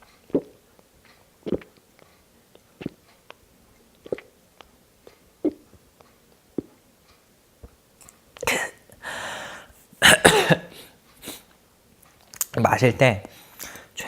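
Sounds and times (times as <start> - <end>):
person gulping water: 0.2 - 0.6, 1.4 - 1.8, 2.6 - 4.4, 5.4 - 5.8, 6.5 - 6.8
person gasping and exhaling: 8.5 - 9.7.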